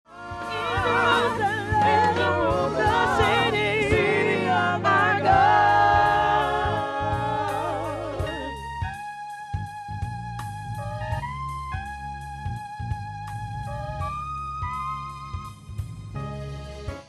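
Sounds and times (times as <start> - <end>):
gospel choir singing: 0.1 - 8.9
steady bass: 0.1 - 17.0.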